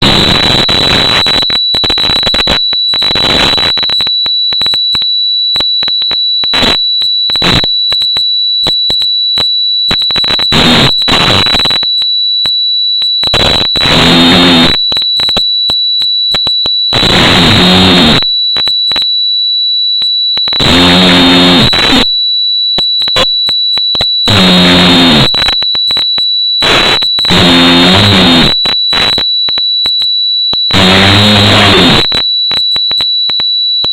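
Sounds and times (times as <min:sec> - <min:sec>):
high-pitched whine: 0:17.0 - 0:18.2, 0:20.6 - 0:22.0, 0:24.3 - 0:25.3, 0:26.7 - 0:28.6, 0:30.7 - 0:32.2
crackly noise: 0:17.0 - 0:19.0, 0:20.4 - 0:22.0, 0:23.0 - 0:29.6, 0:30.6 - 0:33.0.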